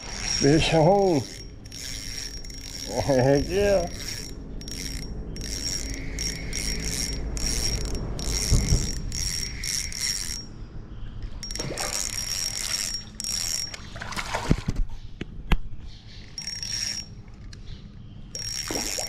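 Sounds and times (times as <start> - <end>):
fishing reel ratcheting crank: 0.0 - 10.6, 11.4 - 13.9, 16.3 - 17.6, 18.3 - 19.0.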